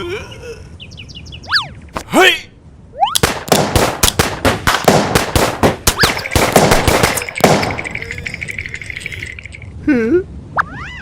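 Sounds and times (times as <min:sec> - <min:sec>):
loud cartoon bangs: 0:03.2 - 0:08.0.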